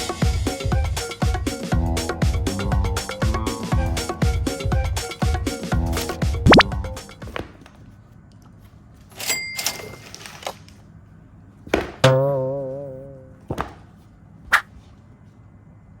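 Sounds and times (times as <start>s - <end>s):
wobbling pitched tone: 6.4s - 6.8s, 12.0s - 13.4s
music phrase: 12.0s - 13.4s.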